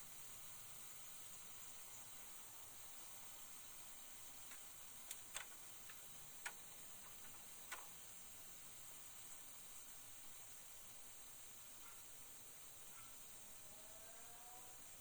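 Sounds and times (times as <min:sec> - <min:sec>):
faint steady hiss: 0:00.0 - 0:15.0
light sharp clicks: 0:04.4 - 0:07.9.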